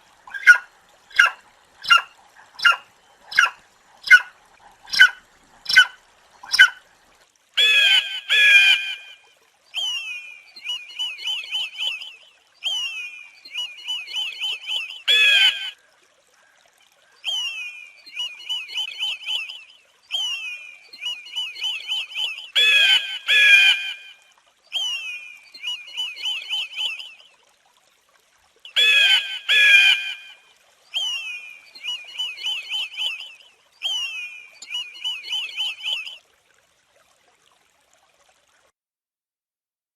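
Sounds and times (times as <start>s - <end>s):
rapid high chattering calls: 0.3s - 4.3s, 4.9s - 6.8s.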